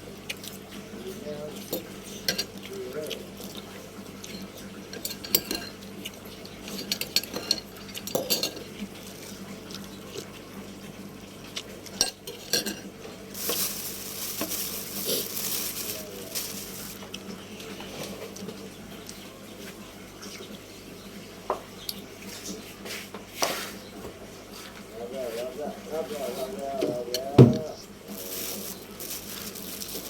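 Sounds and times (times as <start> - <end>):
utensils clinking against dishes: 1.6 - 2.7, 4.2 - 5.8, 6.4 - 8.8, 11.9 - 18.5.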